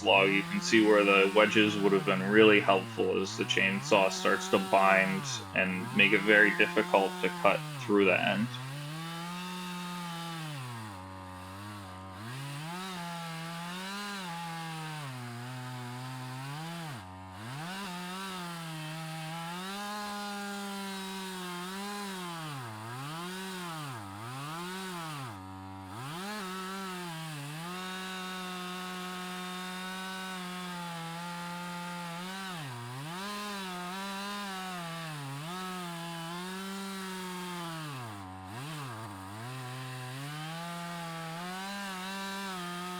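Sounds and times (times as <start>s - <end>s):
chainsaw cutting log: 8.5s - 42.9s.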